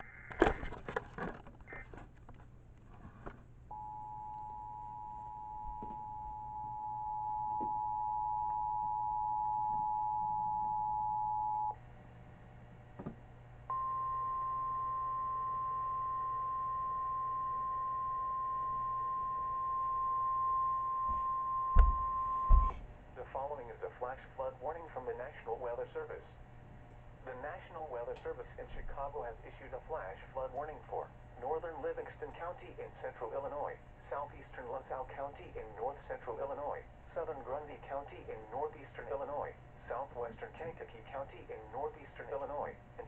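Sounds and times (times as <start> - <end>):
steady warning alarm tone: 3.7 - 11.8, 13.7 - 22.8
two-tone attention signal: 3.7 - 11.8, 13.7 - 22.7
radio hiss: 27.3 - 43.0.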